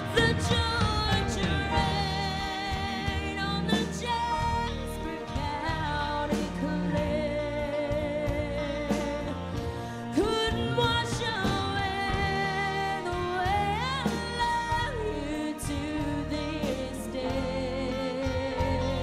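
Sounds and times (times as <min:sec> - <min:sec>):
band playing country music: 0:00.0 - 0:19.0
woman singing: 0:00.0 - 0:19.0.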